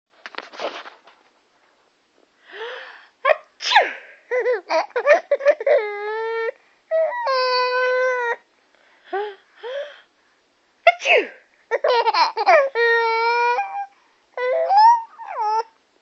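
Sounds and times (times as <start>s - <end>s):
woman sneezing: 3.3s - 4.2s, 10.9s - 11.4s
child giggling: 11.7s - 12.8s
child squealing: 12.5s - 15.7s.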